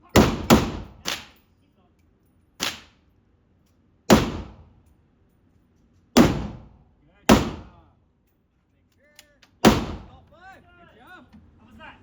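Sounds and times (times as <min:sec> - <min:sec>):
gunshots: 0:00.2 - 0:01.3, 0:02.6 - 0:02.9, 0:04.1 - 0:04.6, 0:06.2 - 0:06.7, 0:07.3 - 0:07.8, 0:09.6 - 0:10.1.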